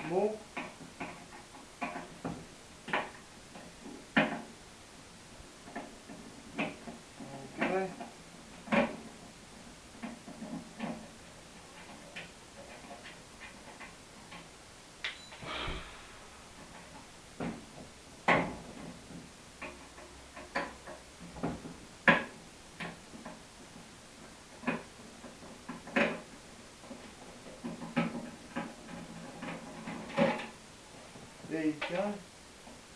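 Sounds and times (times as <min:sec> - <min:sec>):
short metal scrape: 0:15.4 - 0:16.5.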